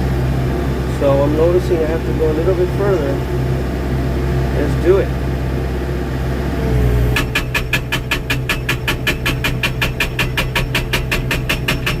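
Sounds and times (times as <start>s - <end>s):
excavator engine hum: 0.0s - 12.0s
hydraulic breaker hammer pounding: 7.2s - 12.0s.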